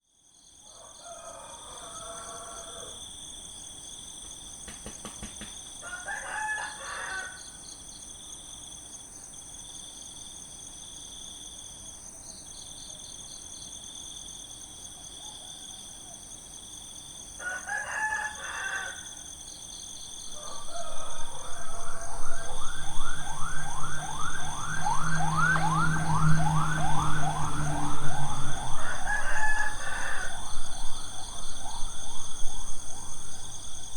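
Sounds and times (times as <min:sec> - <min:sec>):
roosters crowing: 0:00.7 - 0:03.0, 0:05.8 - 0:07.4, 0:17.4 - 0:19.2, 0:20.2 - 0:33.9
vehicle engine and road noise: 0:20.1 - 0:33.9
steady high-pitched drone: 0:20.2 - 0:33.9.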